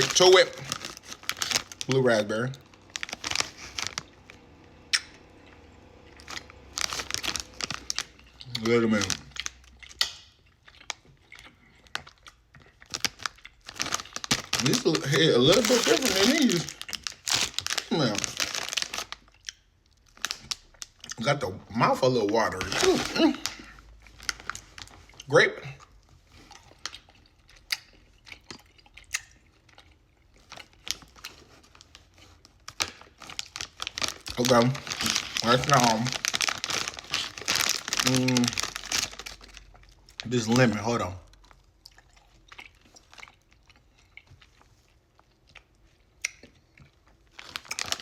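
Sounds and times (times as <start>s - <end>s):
packaging crinkling: 0.0s - 4.4s, 6.2s - 10.2s, 11.9s - 19.3s, 20.1s - 21.0s, 22.0s - 25.2s, 30.3s - 41.6s, 47.3s - 48.0s
person chewing candy: 0.0s - 21.4s, 22.3s - 48.0s
wet mouth clicks and smacks: 4.9s - 5.2s, 9.8s - 10.4s.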